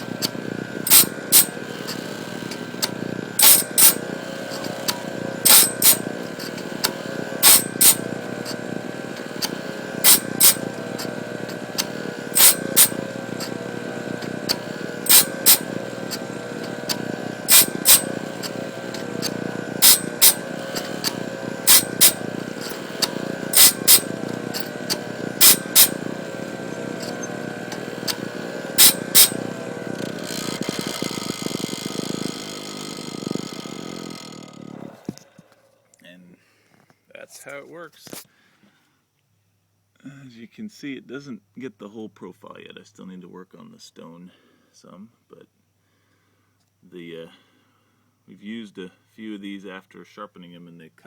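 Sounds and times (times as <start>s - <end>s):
grinding stone on blade: 0.0s - 35.2s
saw motor running: 0.0s - 35.5s.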